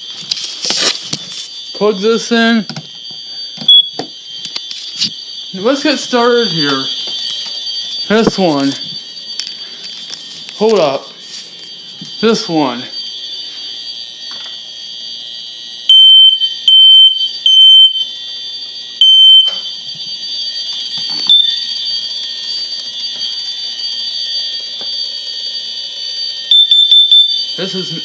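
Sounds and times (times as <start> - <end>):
loud smoke alarm beeps: 0.0 - 28.0
smoke alarms shrill tone: 0.0 - 28.0.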